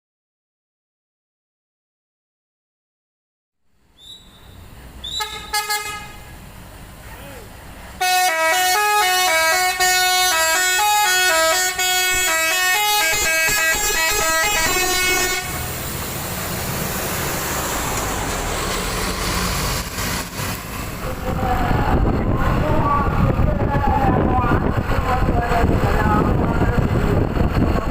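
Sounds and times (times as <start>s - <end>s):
bus engine rumbling: 3.7s - 27.9s
multi-tone musical bus horn: 5.0s - 6.3s, 8.0s - 15.8s.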